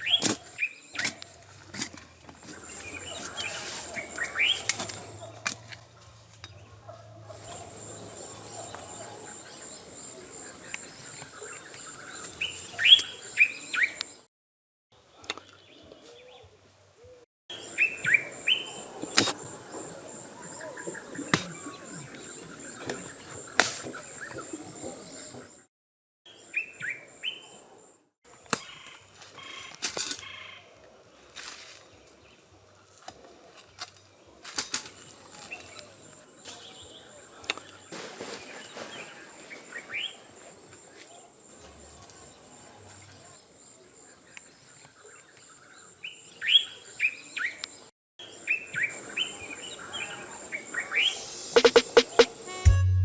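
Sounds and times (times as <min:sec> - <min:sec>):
small birds chirping: 0:00.0 - 0:14.2.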